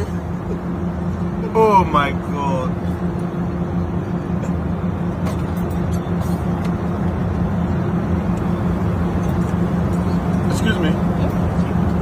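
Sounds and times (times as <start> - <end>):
constant low hum: 0.0 - 12.0.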